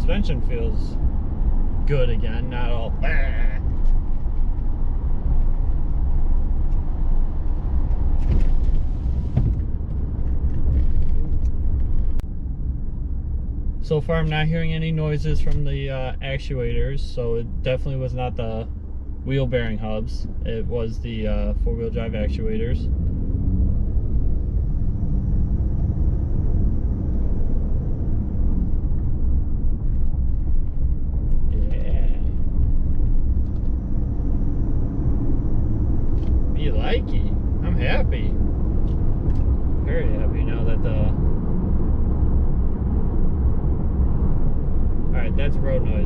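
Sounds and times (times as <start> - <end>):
road and tyre noise in car cab: 0.0 - 46.0.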